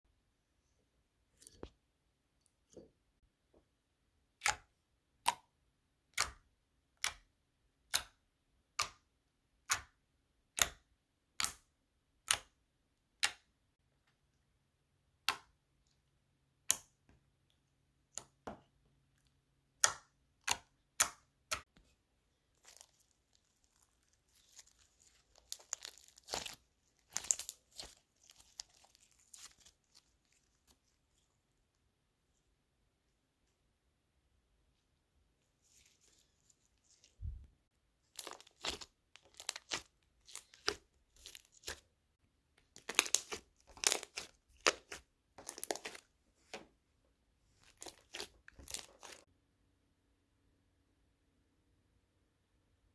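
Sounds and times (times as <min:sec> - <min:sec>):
slime clicking and crackling: 0:22.5 - 0:30.8, 0:38.1 - 0:41.8, 0:42.6 - 0:46.0, 0:47.6 - 0:49.2.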